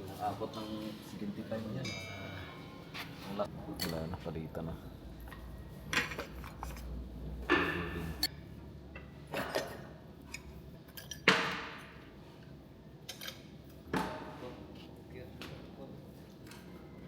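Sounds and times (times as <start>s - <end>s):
metal tools clinking and knocking: 3.8s - 4.2s, 9.4s - 11.3s, 13.1s - 13.4s.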